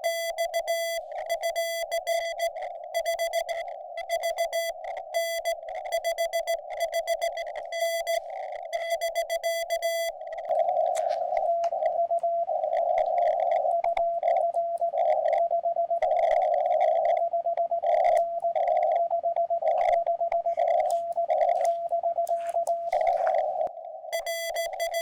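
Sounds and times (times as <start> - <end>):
morse code tone: 0.0 - 11.7, 20.4 - 25.0
radio static: 9.9 - 13.6, 19.9 - 25.0.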